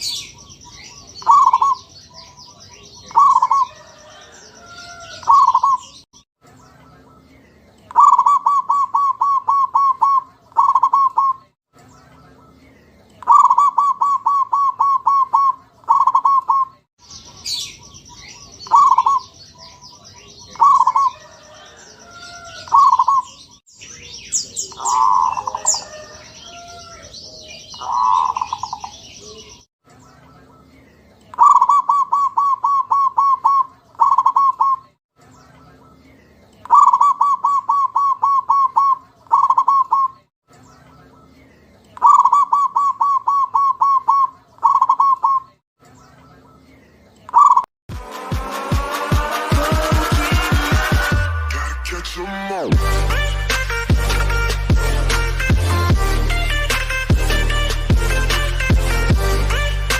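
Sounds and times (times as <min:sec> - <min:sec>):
bird chirps: 0:00.0 - 0:47.7
dove cooing: 0:01.0 - 0:01.9, 0:03.0 - 0:06.0, 0:07.9 - 0:11.5, 0:13.2 - 0:16.8, 0:18.6 - 0:19.3, 0:20.5 - 0:23.4, 0:24.6 - 0:29.6, 0:31.4 - 0:34.9, 0:36.7 - 0:40.2, 0:42.0 - 0:45.5.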